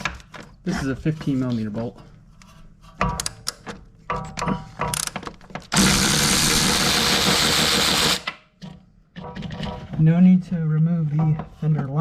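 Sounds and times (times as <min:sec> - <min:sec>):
cordless impact wrench running: 0:05.8 - 0:08.3.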